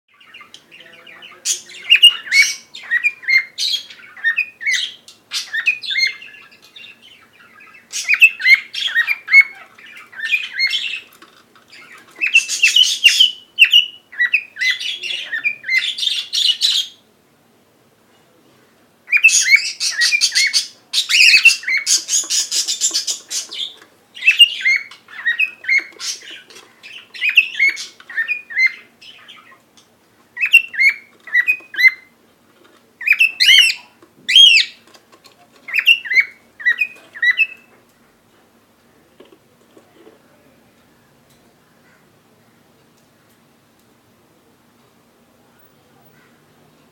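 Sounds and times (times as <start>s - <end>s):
cockatiel chirping and squawking: 1.4s - 11.1s, 19.1s - 29.6s, 30.4s - 32.1s, 33.0s - 34.8s, 35.7s - 37.7s.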